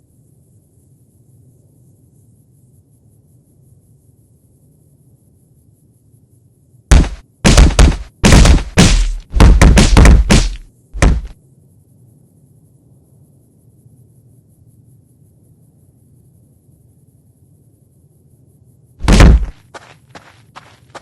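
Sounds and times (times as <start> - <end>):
loud heavy thumps: 6.9 - 11.4, 19.0 - 19.6.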